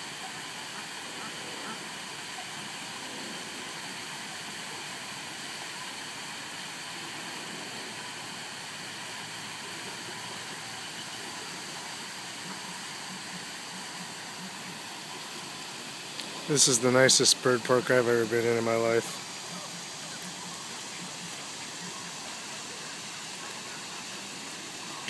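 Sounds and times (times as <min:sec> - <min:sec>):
steady rushing noise: 0:10.5 - 0:25.0.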